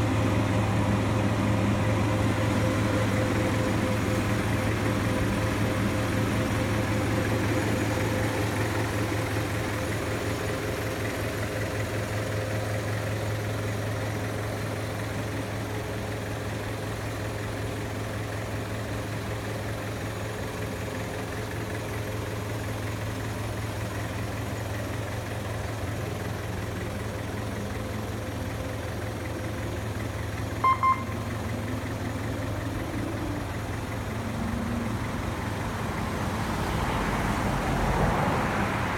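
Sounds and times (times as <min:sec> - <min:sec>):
vehicle engine idling: 0:00.0 - 0:38.9
short high electronic beeps: 0:30.6 - 0:31.3.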